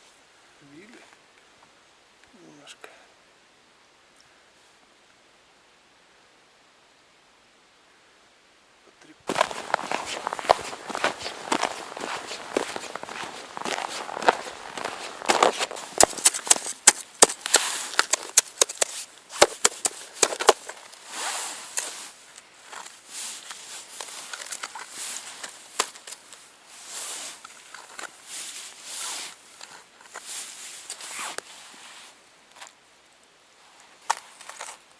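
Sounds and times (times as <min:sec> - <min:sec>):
snow scraping swishes: 0:09.3 - 0:18.2, 0:21.0 - 0:22.3, 0:23.0 - 0:25.8, 0:26.6 - 0:27.4, 0:28.2 - 0:29.5, 0:30.1 - 0:32.2
ice and snow crunching and cracking: 0:09.3 - 0:32.8, 0:33.8 - 0:34.9.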